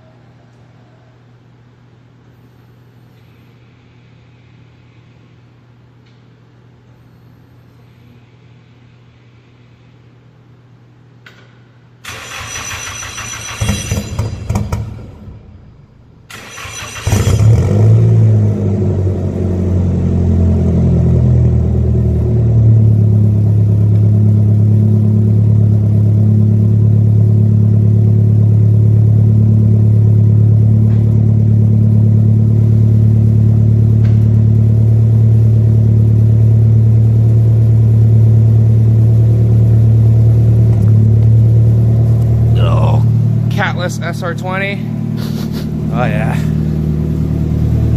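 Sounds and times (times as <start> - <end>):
car engine starting and idling: 12.0 - 47.9.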